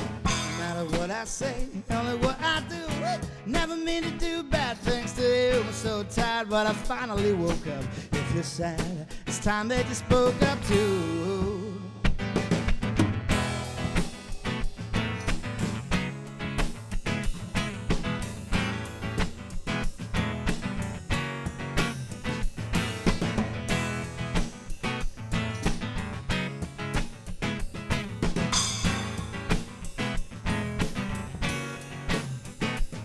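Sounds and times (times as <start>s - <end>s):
guitar playing: 0.0s - 1.0s, 10.4s - 33.0s
hand percussion beat: 0.0s - 9.1s, 9.8s - 33.0s.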